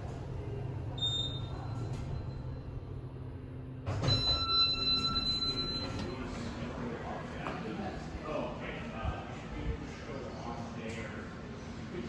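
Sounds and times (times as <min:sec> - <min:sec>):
elevator car humming: 0:00.0 - 0:07.4
elevator chime: 0:03.9 - 0:06.5.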